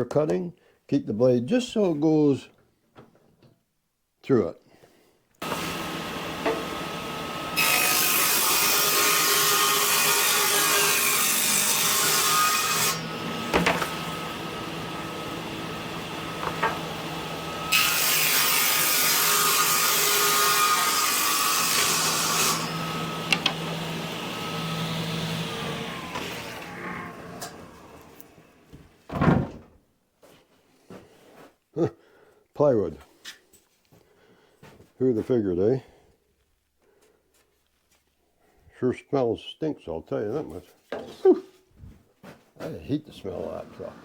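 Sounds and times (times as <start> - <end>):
table saw cutting plywood: 5.4 - 28.5, 43.3 - 44.0
saw winding down whine: 19.7 - 28.3.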